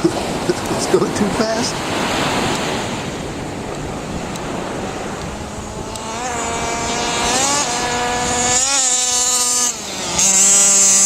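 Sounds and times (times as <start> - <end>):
wind and surf hissing: 0.0 - 11.0
toy car motor whining: 5.3 - 11.0.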